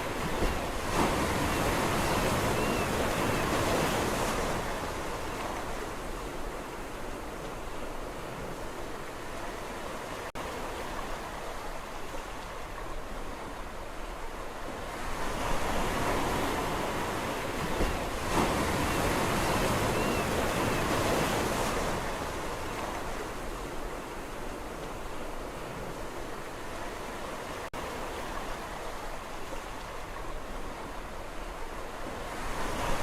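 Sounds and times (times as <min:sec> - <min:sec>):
sea waves on shore: 0:00.0 - 0:33.0.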